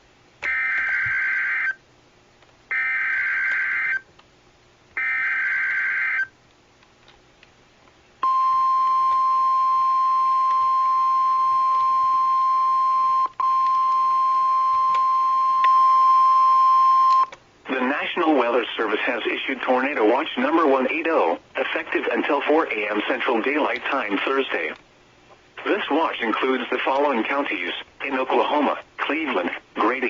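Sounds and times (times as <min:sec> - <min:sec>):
steady warning alarm tone: 0:00.4 - 0:01.8, 0:02.7 - 0:04.0, 0:05.0 - 0:06.3, 0:08.2 - 0:17.3.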